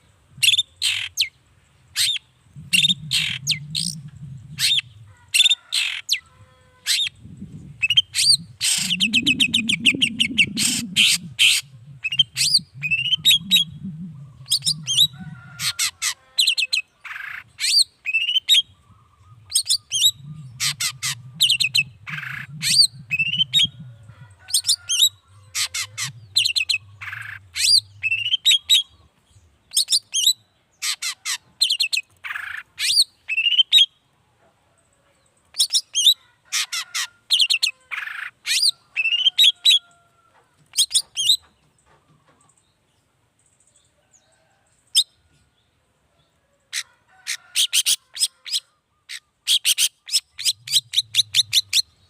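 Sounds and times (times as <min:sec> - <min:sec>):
shrike harsh chattering song: 0:02.0 - 0:05.0, 0:07.8 - 0:15.9, 0:19.5 - 0:28.9.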